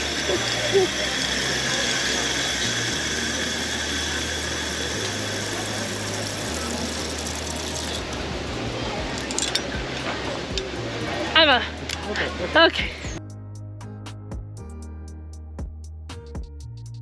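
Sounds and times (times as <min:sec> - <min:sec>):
pulleys whirring along steel cable: 0:00.0 - 0:13.0.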